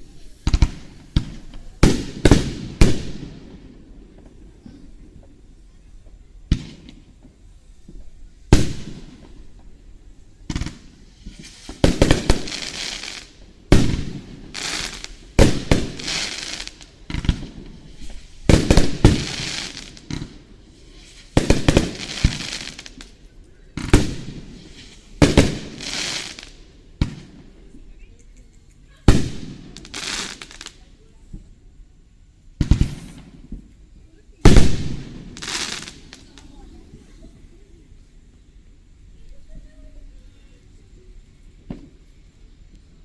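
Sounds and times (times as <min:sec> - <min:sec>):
firework shells booming: 0:00.4 - 0:04.8, 0:07.9 - 0:09.8, 0:10.4 - 0:20.6, 0:21.3 - 0:23.1, 0:23.8 - 0:27.5, 0:29.1 - 0:30.7, 0:32.6 - 0:33.8, 0:34.4 - 0:36.5
hissing crackle: 0:06.7 - 0:31.2, 0:32.7 - 0:43.0.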